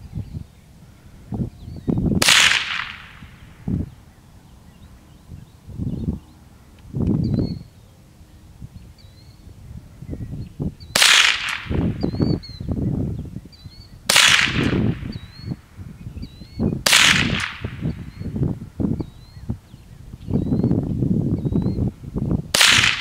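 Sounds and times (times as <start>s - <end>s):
rifle shots: 2.2s - 3.5s, 11.0s - 12.1s, 14.1s - 15.2s, 16.8s - 17.9s, 22.5s - 23.0s.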